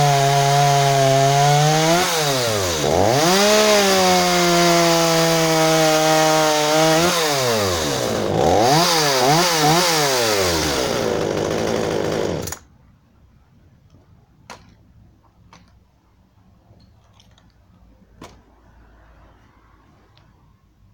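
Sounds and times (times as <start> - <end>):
chainsaw engine revving: 0.0 - 12.6.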